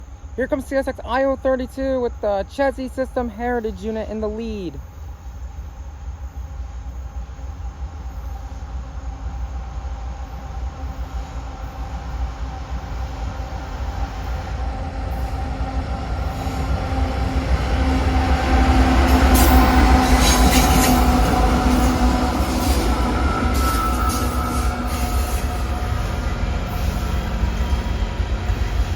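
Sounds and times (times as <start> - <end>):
diesel train engine rumble: 0.0 - 28.9
rail noise: 0.0 - 28.9
train wheel squeal: 18.7 - 28.9.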